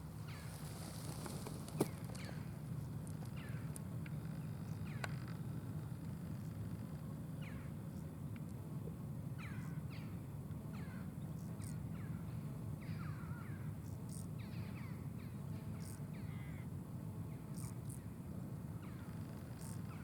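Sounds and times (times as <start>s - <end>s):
crow-like bird calls: 0.3s - 0.6s, 3.3s - 3.7s, 9.4s - 10.1s, 10.7s - 13.7s, 14.4s - 16.7s
grasshopper chirps: 17.5s - 18.0s, 19.0s - 20.0s.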